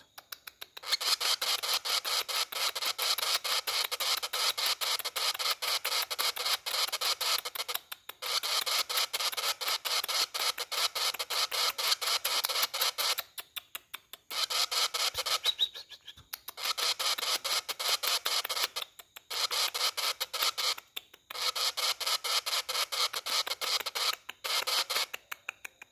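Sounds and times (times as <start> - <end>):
bird chicks begging chatter: 0.0 - 13.6, 14.3 - 25.3.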